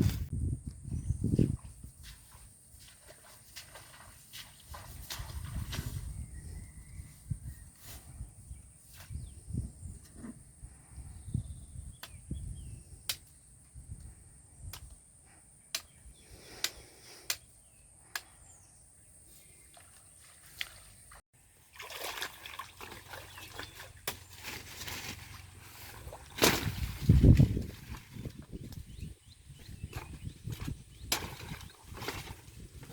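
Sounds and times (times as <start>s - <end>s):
water splashing and trickling: 1.5s - 6.2s, 19.5s - 32.9s.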